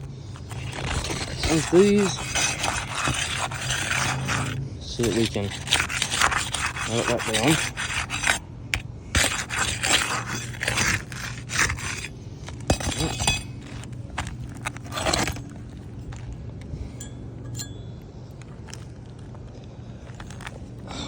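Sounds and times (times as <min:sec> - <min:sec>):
scrapes on roof shingles: 0:00.3 - 0:08.4, 0:09.2 - 0:15.7.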